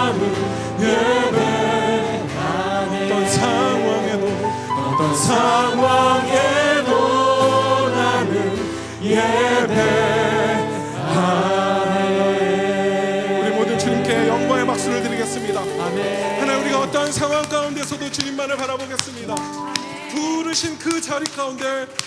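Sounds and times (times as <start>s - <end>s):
sustained instrumental accompaniment: 0.0s - 21.0s
voices singing a praise song: 0.0s - 21.2s.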